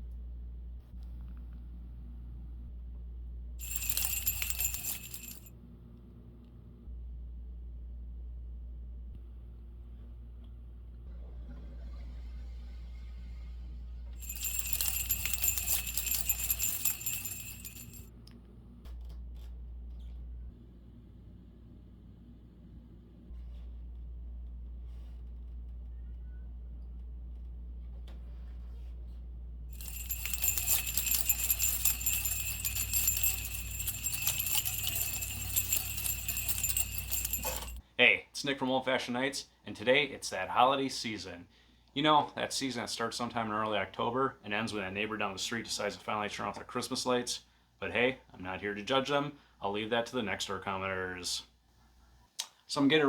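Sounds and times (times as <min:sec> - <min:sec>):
jingle bells shaken: 0:03.6 - 0:05.5, 0:14.2 - 0:18.0, 0:29.8 - 0:37.8.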